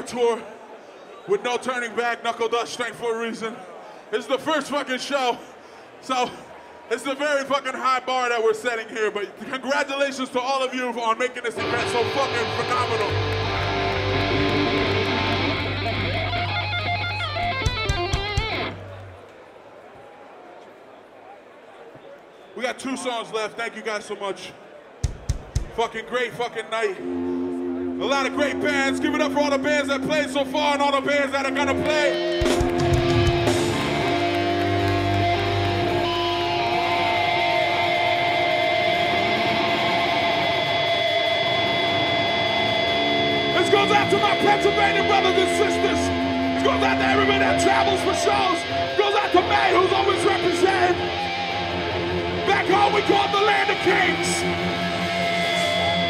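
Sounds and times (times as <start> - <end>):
low bass drone: 11.6 - 17.5
electric guitars through amplifiers: 11.6 - 19.2, 27.0 - 56.0.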